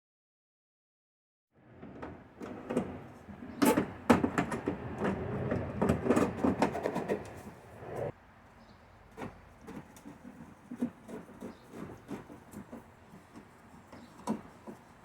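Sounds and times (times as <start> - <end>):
scraping: 1.8 - 8.1
hardware knocking and clicking: 3.6 - 7.4.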